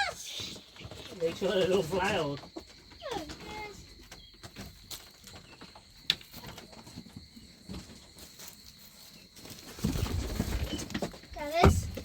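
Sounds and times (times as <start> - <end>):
wings flapping: 9.7 - 11.1.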